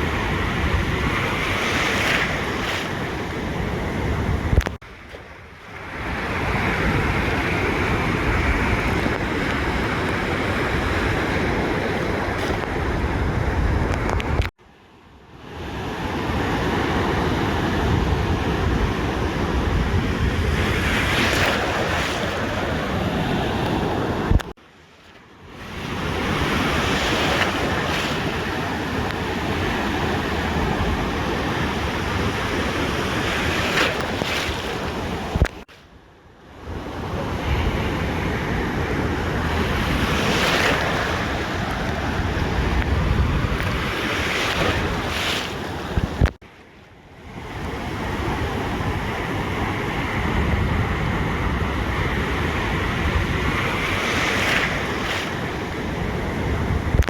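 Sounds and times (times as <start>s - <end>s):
wind buffeting microphone: 0.0s - 14.5s, 16.3s - 24.5s, 36.6s - 46.4s, 47.3s - 57.0s
ocean surf washing onto beach: 0.0s - 35.9s, 36.5s - 57.0s.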